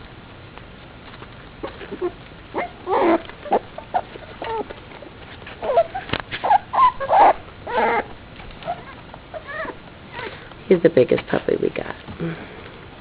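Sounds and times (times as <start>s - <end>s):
puppies whimpering: 1.6s - 10.5s.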